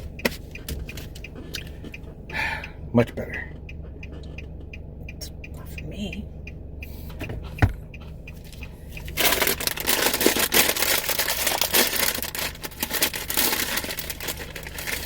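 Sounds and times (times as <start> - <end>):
car low hum: 0.0 - 15.0
low thump: 7.2 - 7.8
plastic chip bag crinkling: 9.1 - 15.0.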